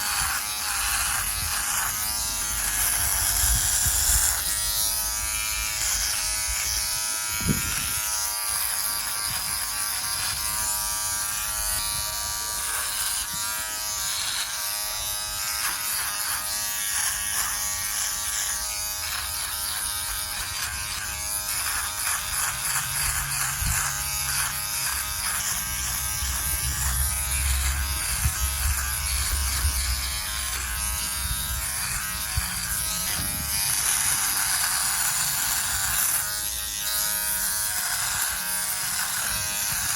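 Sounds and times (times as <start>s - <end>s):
electric trimmer buzzing: 0.0s - 39.9s.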